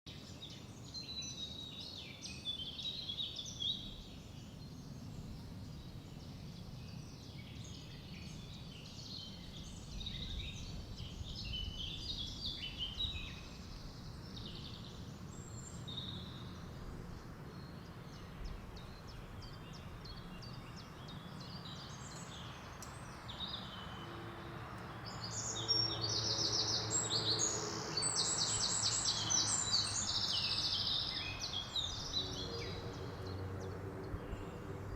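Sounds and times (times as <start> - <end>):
birds chirping and calling: 17.6 - 34.7.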